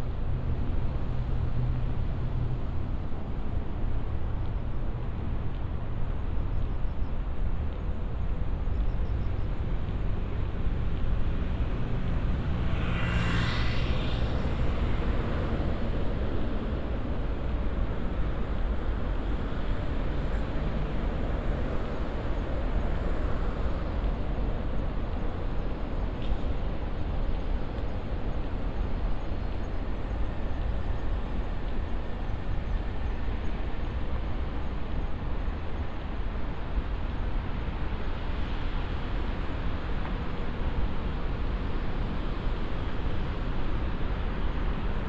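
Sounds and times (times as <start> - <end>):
city ambience rumble: 9.5 - 45.0.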